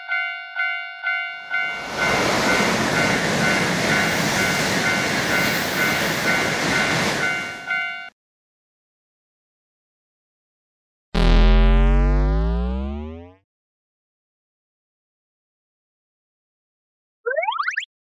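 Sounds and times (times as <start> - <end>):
railroad crossing bell ringing: 0.0 - 8.1
high-speed train rushing past: 1.6 - 7.8.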